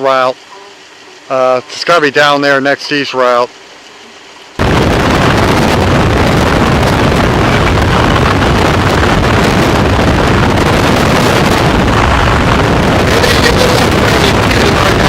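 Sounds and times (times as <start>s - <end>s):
wind buffeting microphone: 4.6s - 15.0s.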